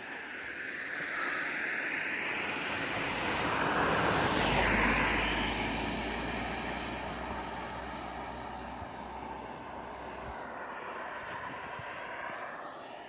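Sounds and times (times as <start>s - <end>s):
motor vehicle passing by: 2.8s - 11.6s.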